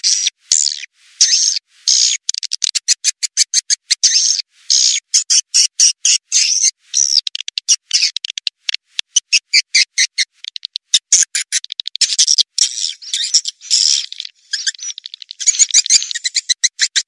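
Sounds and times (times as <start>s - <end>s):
high-pitched bird twitters: 0.0s - 17.0s
bird dry clicks: 7.1s - 9.4s, 10.4s - 12.8s, 14.5s - 16.3s.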